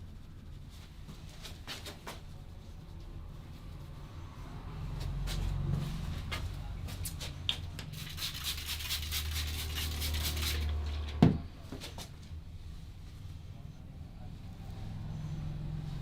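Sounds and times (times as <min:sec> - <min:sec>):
hands rubbing and patting skin: 0:07.8 - 0:10.7.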